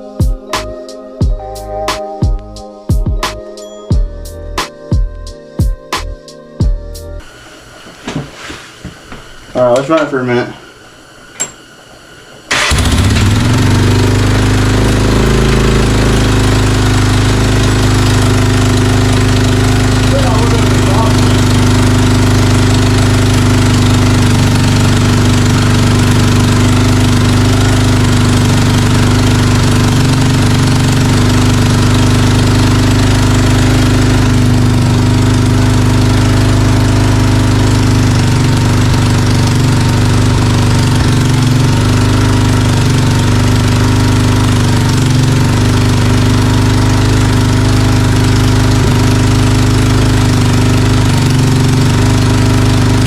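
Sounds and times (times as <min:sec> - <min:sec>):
engine idling: 0:12.5 - 0:53.0.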